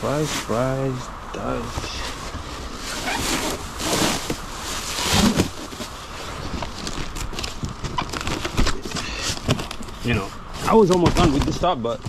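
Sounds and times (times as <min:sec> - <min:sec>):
steady hiss: 0:00.0 - 0:06.7
cardboard boxes knocking and scraping: 0:02.8 - 0:12.0.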